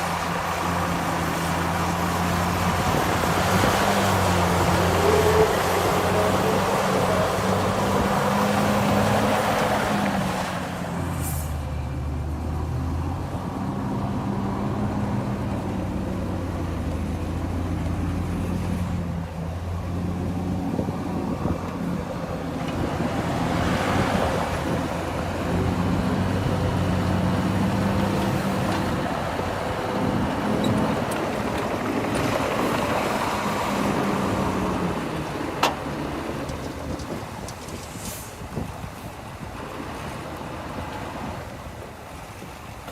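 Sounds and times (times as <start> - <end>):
diesel engine of heavy machinery: 0.0 - 42.9.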